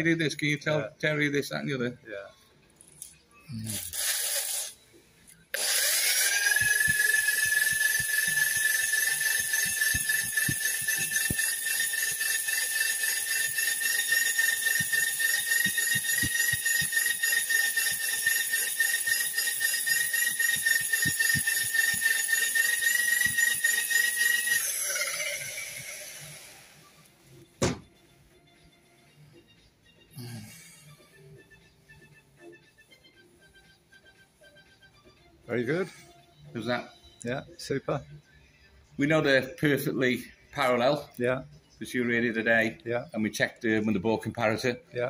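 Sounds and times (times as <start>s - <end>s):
honing machine metallic squeal: 6.8s - 24.6s
sharp knock: 27.6s - 27.9s.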